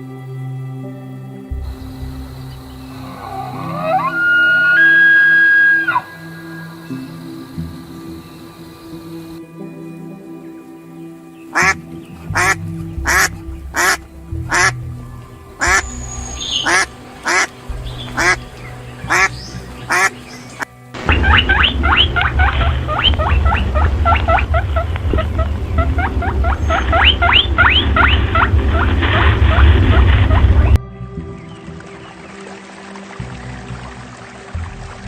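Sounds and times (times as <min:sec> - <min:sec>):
soft background music: 0:00.0 - 0:35.0
low rumble: 0:01.5 - 0:05.0, 0:12.0 - 0:19.9, 0:21.0 - 0:31.4
rapid high squeals: 0:02.8 - 0:07.4
duck quacking: 0:11.6 - 0:14.8, 0:15.6 - 0:18.4, 0:19.0 - 0:20.4, 0:21.0 - 0:30.7.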